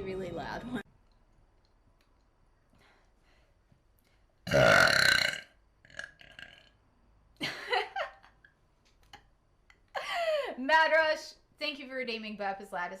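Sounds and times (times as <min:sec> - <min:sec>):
woman burping: 0:04.5 - 0:06.7.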